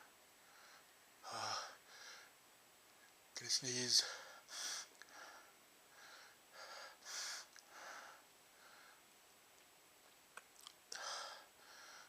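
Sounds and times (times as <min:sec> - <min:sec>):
man gasping breaths: 0:00.4 - 0:02.4, 0:04.0 - 0:09.1, 0:10.9 - 0:12.0.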